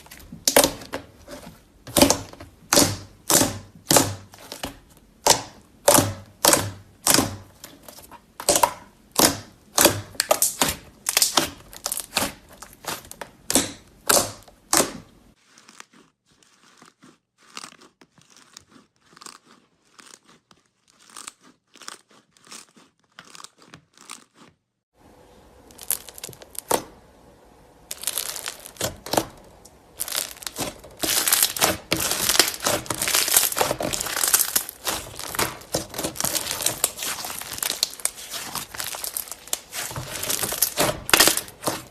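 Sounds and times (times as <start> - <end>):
slime crackling and popping: 1.9 - 24.4, 25.7 - 26.9, 27.9 - 41.9.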